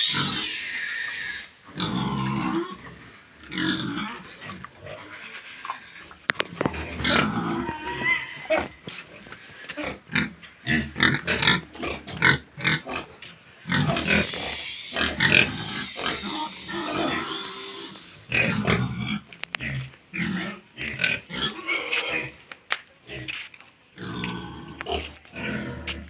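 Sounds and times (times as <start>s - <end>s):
pigs calling: 0.0s - 23.4s, 24.0s - 26.0s.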